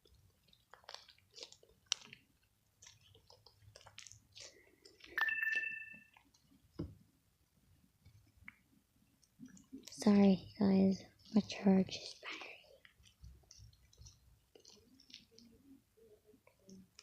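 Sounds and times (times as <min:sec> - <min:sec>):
slime squishing by hand: 0:00.0 - 0:05.2, 0:07.9 - 0:17.0
electronic two-tone alert: 0:05.2 - 0:06.1.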